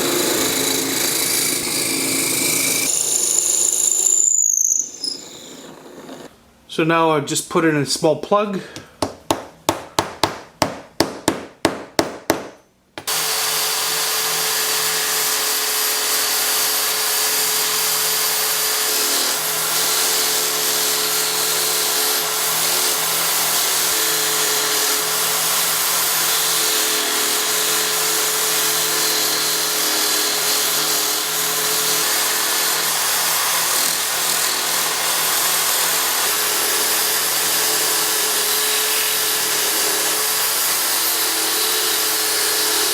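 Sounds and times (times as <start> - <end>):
power tool humming and hissing: 13.0 - 18.4.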